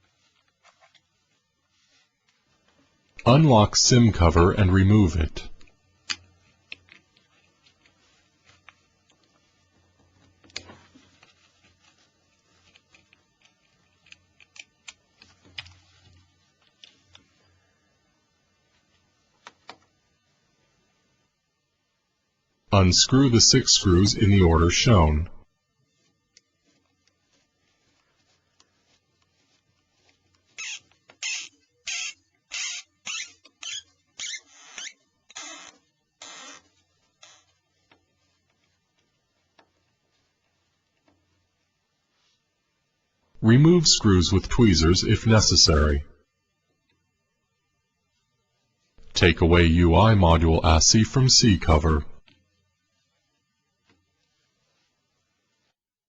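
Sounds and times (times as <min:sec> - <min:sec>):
screwdriver scraping screws: 0:30.6 - 0:36.6.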